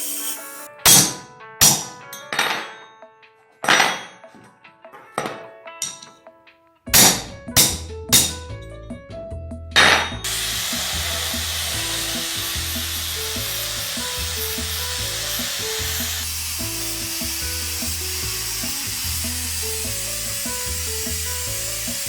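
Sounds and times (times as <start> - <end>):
background music: 0.0 - 22.0
steady hiss: 10.3 - 22.0.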